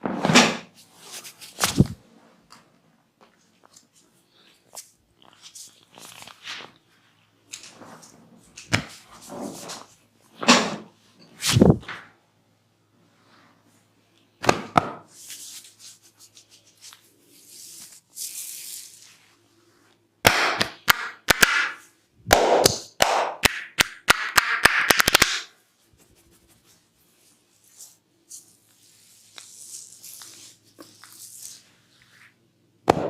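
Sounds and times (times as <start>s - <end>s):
soft rubbing: 25.6s - 32.5s.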